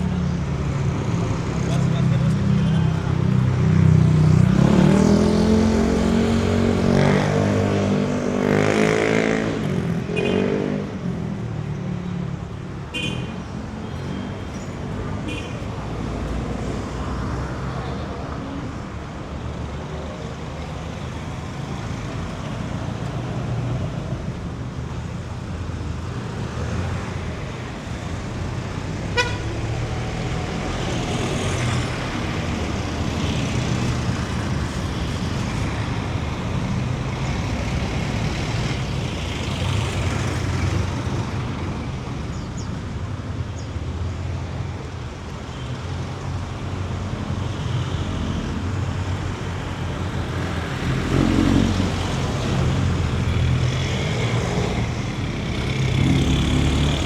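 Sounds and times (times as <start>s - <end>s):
city street traffic: 0.0s - 57.0s
short sharp horn toot: 29.2s - 29.6s.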